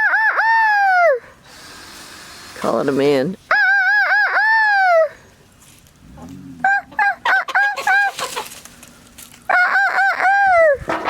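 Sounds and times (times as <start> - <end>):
rooster crowing: 6.6 - 8.2.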